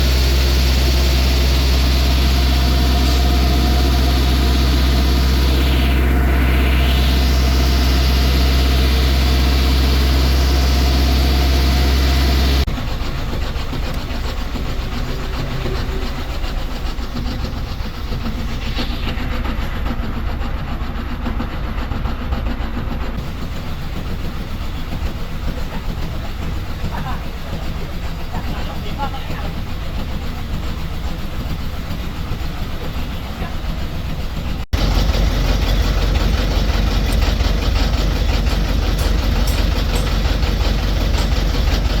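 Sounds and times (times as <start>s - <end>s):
low engine drone: 0.0s - 42.0s
uneven mechanical rattling: 34.8s - 42.0s.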